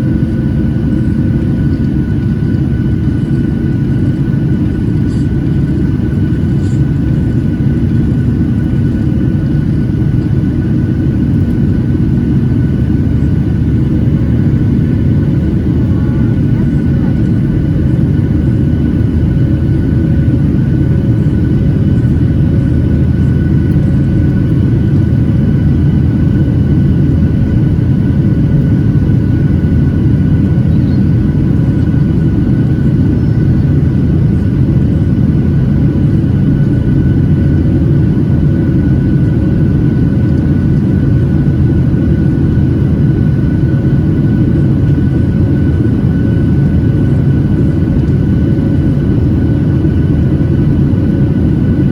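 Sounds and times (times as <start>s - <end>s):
jet engines rumbling and whining: 0.0s - 51.9s.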